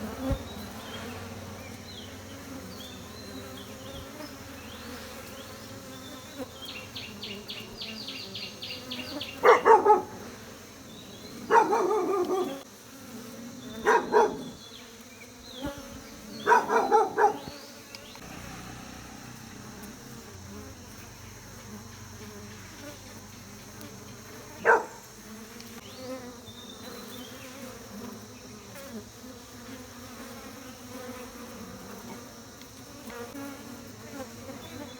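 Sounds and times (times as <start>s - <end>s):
honey bees buzzing: 0.0s - 34.9s
dog barking: 9.4s - 10.3s, 11.4s - 12.6s, 13.8s - 14.6s, 16.4s - 17.5s, 24.6s - 25.0s.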